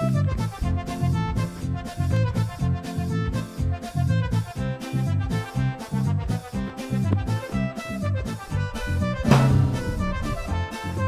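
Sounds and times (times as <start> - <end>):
upbeat comic swing music: 0.0 - 11.0.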